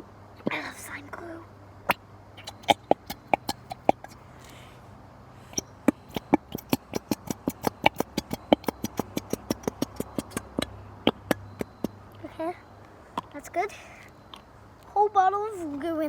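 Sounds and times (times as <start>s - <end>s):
glue bottle sputtering pops and clicks: 5.6s - 12.0s.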